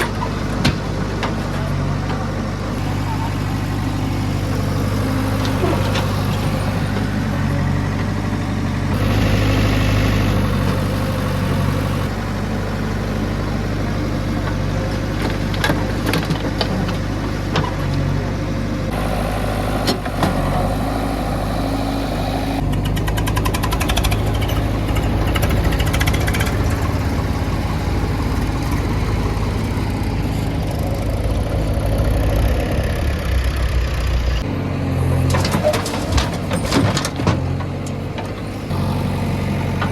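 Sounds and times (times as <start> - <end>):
diesel engines running: 0.0 - 39.9
knocks and clatter: 22.6 - 30.1, 35.1 - 38.6.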